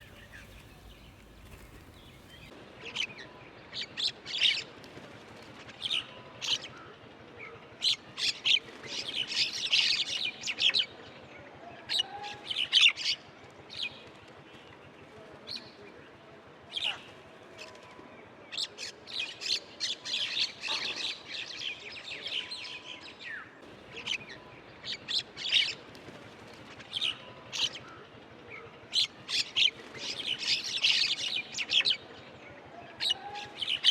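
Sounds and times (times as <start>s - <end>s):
small birds chirping: 0.0s - 2.5s
faint outdoor background: 0.0s - 33.9s.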